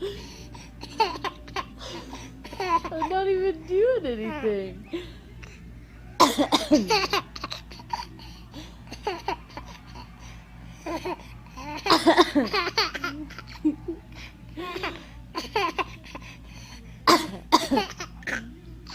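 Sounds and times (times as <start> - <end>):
baby laughing and babbling: 0.8 - 3.2, 10.9 - 13.6, 14.6 - 16.2.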